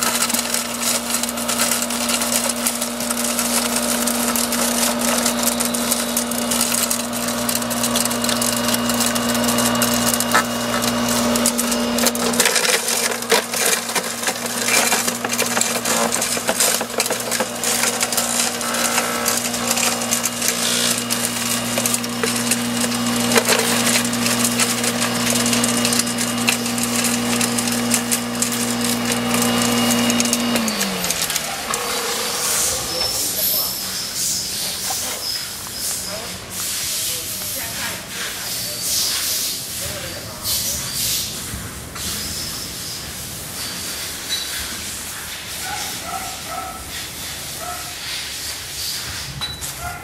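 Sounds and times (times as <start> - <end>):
wood cracking and splintering: 0.0 - 33.7
garden shredder motor hum: 0.0 - 48.0.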